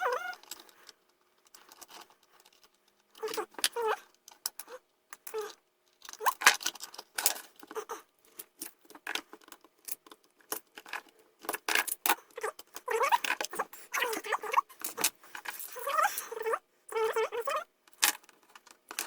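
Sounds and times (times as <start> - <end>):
squeaky scraping: 3.2 - 5.6, 12.4 - 17.7.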